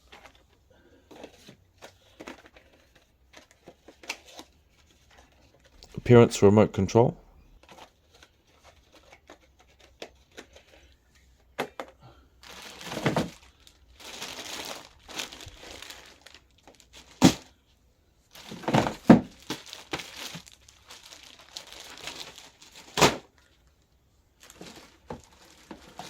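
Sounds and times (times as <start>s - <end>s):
plastic packaging crinkling: 12.4s - 17.5s, 18.3s - 23.8s, 24.4s - 26.0s.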